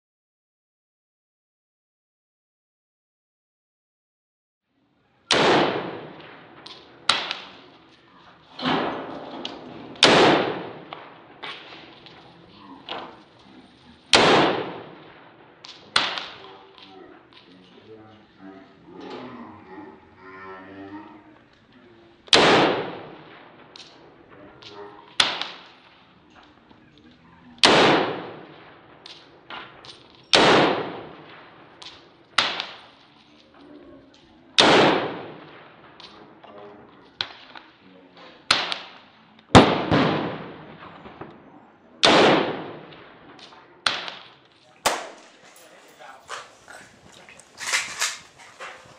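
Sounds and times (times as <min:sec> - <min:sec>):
gunshots with echo: 0:05.3 - 0:19.4, 0:22.2 - 0:26.8, 0:27.4 - 0:33.6, 0:34.5 - 0:36.5, 0:38.4 - 0:48.9.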